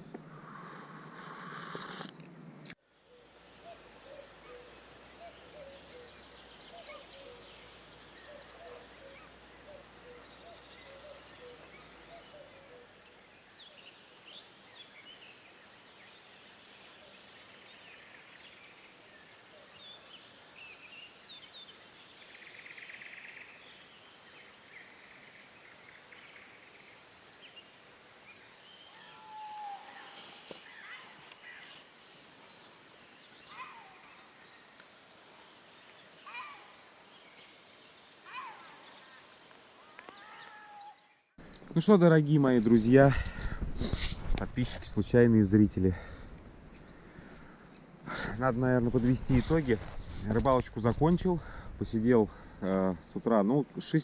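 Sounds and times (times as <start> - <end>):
low repeated bird call: 3.0 - 41.9.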